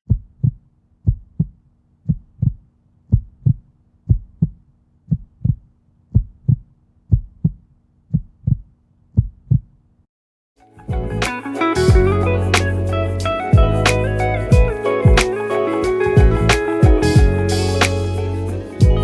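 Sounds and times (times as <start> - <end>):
heartbeat thumps: 0.1 - 9.7, 10.9 - 11.2, 11.9 - 12.2, 13.5 - 13.8, 14.5 - 15.3, 16.2 - 17.5.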